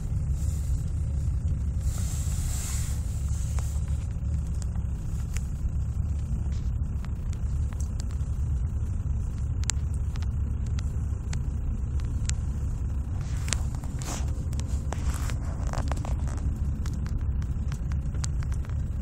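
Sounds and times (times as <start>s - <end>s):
car engine idling roughly: 0.0s - 19.0s
short scraping noises: 1.8s - 4.1s
light ticks: 3.5s - 19.0s.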